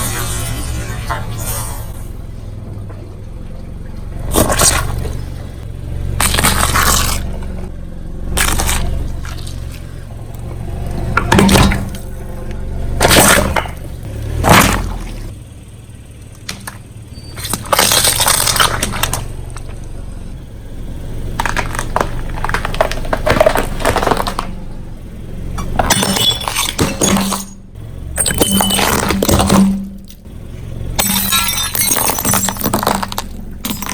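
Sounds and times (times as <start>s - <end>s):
low engine rumble: 0.0s - 33.9s
tyre crushing brittle objects: 6.2s - 7.6s, 8.4s - 9.9s, 17.4s - 19.3s, 21.3s - 24.6s, 31.0s - 33.9s.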